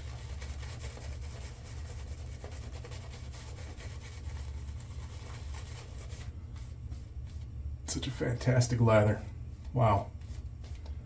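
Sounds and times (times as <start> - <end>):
scratchy shaving brush strokes: 0.0 - 7.5
steady low hum: 0.0 - 11.0.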